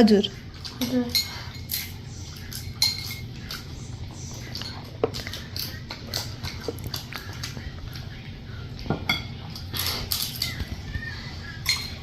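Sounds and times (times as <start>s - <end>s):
cutlery clinking on plates: 0.6s - 3.7s, 8.8s - 10.7s, 11.6s - 12.0s.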